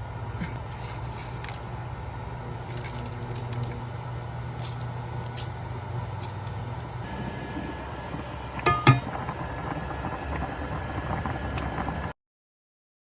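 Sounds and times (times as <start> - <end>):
steady low hum: 0.0 - 12.1
utensils clinking on cookware: 8.6 - 9.1.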